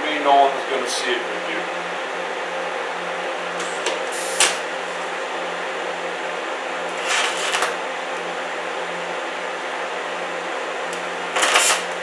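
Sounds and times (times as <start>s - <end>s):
welding arc buzzing: 3.6s - 5.3s, 6.8s - 8.5s, 10.9s - 12.0s.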